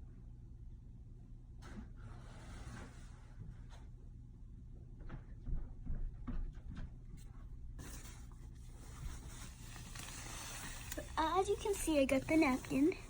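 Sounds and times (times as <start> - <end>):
steady low hum: 0.0 - 13.0
faint taps and knocks: 5.0 - 7.4
background hiss: 7.8 - 13.0.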